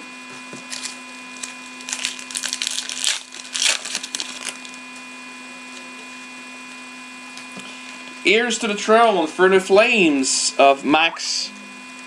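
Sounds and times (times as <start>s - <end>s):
wrapper crinkling and tearing: 0.7s - 4.8s.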